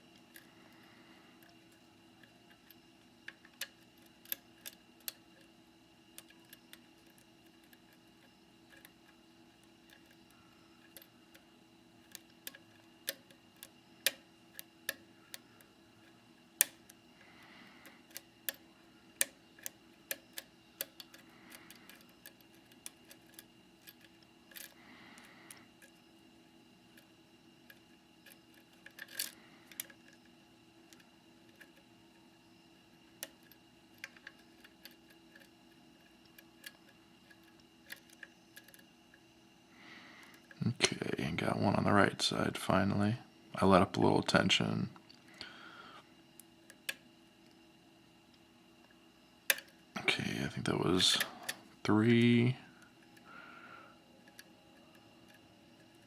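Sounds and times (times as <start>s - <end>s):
lock pick clicking against pins: 1.4s - 5.5s, 12.0s - 17.2s, 17.8s - 26.0s, 26.9s - 31.9s, 33.0s - 39.2s, 49.5s - 49.8s, 54.1s - 56.0s.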